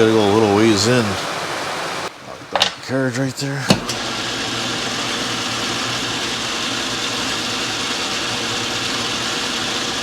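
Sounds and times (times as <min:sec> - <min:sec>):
metal lathe running: 0:03.7 - 0:10.0.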